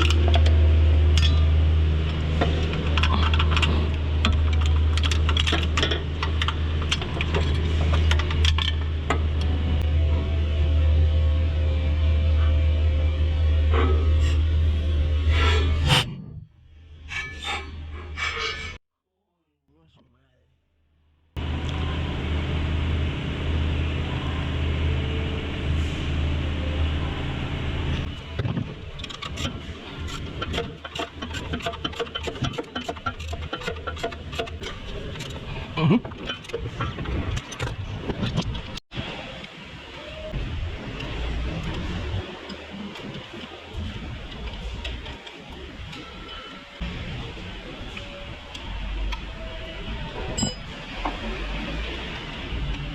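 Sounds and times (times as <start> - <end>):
metal tools clinking: 50.4 - 50.7.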